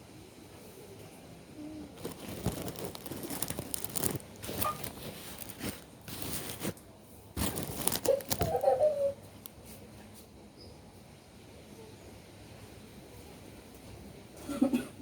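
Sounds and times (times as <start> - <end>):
rustling and crinkling: 1.9 - 10.3.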